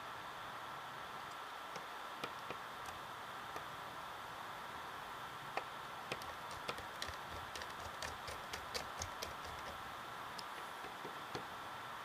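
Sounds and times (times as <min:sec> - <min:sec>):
faint hiss: 0:00.0 - 0:12.0
screwdriver clicks and taps: 0:05.6 - 0:09.8.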